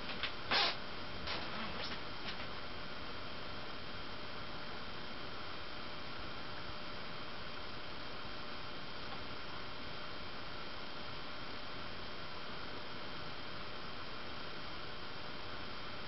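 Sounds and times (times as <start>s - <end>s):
ceiling fan motor humming: 0.0s - 16.0s.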